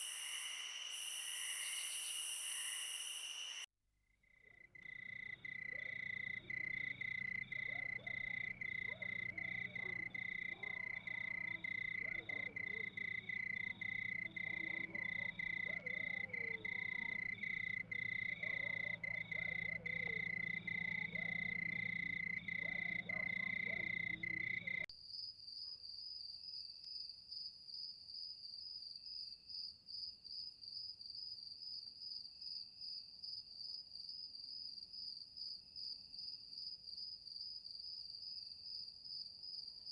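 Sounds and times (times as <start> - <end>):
crickets trilling: 0.0 - 3.7, 4.5 - 24.8
frogs calling: 0.0 - 3.7, 4.5 - 24.9
high-pitched cricket trill: 0.0 - 3.7, 4.5 - 24.9.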